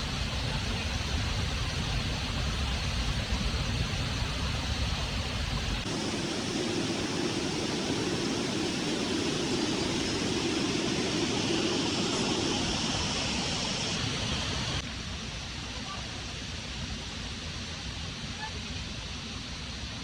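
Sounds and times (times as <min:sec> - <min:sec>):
waterfall rushing: 0:00.0 - 0:14.8.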